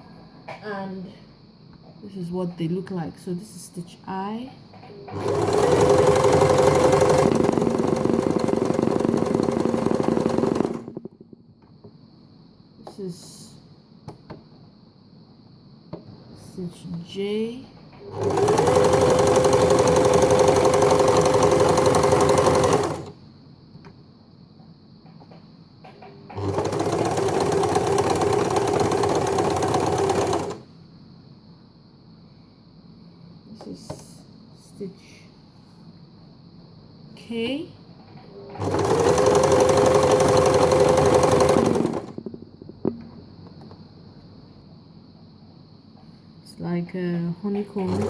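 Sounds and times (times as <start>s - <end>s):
sewing machine running: 5.1s - 11.1s, 18.0s - 23.2s, 26.3s - 30.6s, 38.4s - 42.2s, 47.8s - 48.0s.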